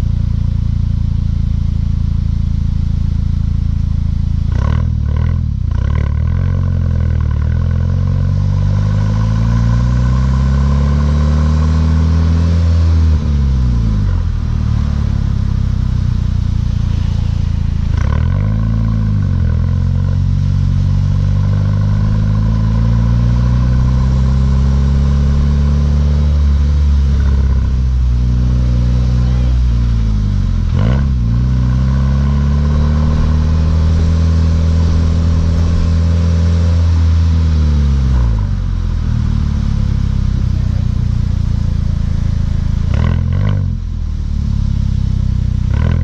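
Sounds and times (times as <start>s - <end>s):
car engine accelerating: 0.0s - 46.0s.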